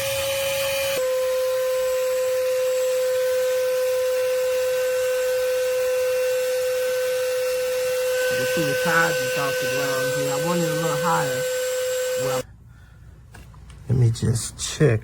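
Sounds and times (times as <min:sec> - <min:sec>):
hydraulic jack pump whining: 0:06.9 - 0:12.5.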